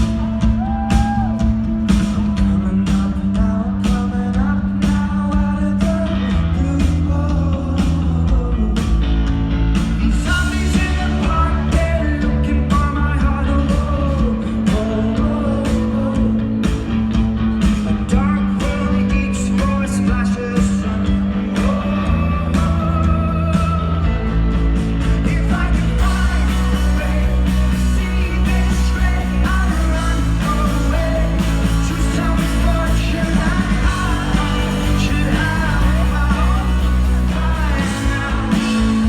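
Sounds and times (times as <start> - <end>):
drum beat: 0.0 - 3.3, 25.1 - 39.0
lead singer singing: 0.0 - 9.1, 9.8 - 17.0, 17.6 - 39.0
live rock band playing: 0.0 - 39.0.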